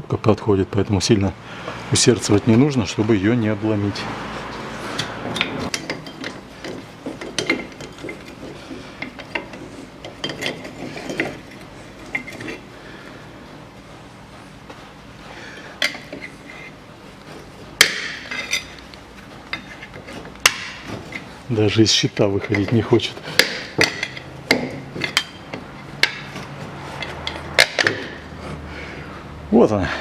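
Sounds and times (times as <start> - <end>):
hand tools clinking on metal: 4.9 - 12.7, 17.8 - 28.2
sharp metallic knocks: 17.8 - 18.7, 20.4 - 21.3, 22.5 - 28.2.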